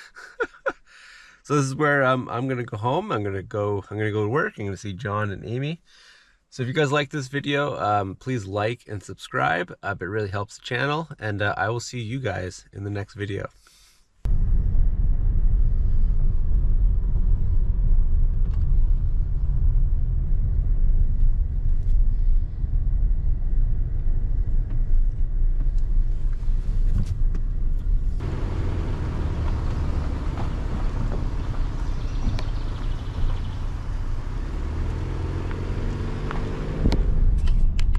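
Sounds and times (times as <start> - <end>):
car engine and tyres rumbling: 14.2 - 37.9.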